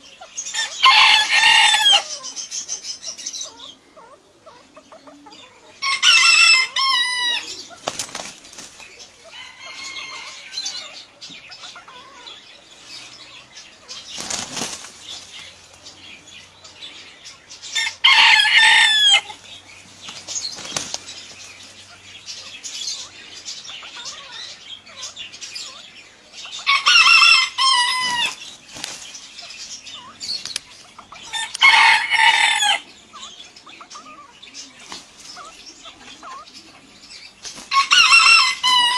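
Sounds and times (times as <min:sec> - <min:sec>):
rooster crowing: 0:00.6 - 0:02.2, 0:05.8 - 0:07.6, 0:09.3 - 0:10.9, 0:17.8 - 0:19.4, 0:26.6 - 0:28.3, 0:31.3 - 0:32.8, 0:37.7 - 0:38.9
wings flapping: 0:07.7 - 0:08.9, 0:14.0 - 0:15.5, 0:20.0 - 0:21.5, 0:28.0 - 0:29.2, 0:34.8 - 0:35.5, 0:37.4 - 0:38.6.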